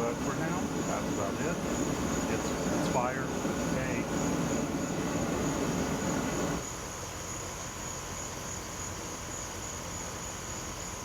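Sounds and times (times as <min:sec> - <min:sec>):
gas burner roaring: 0:00.0 - 0:06.6
crickets chirping: 0:00.0 - 0:11.0.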